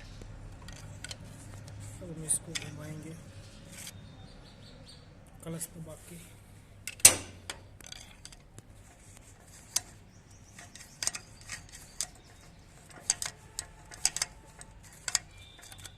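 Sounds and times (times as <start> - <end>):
gearbox gears clicking: 0.0 - 2.9, 6.9 - 15.9.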